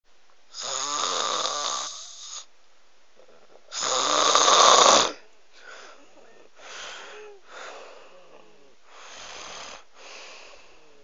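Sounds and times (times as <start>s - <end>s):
loud rattling snores: 0.6s - 2.5s, 3.7s - 5.2s.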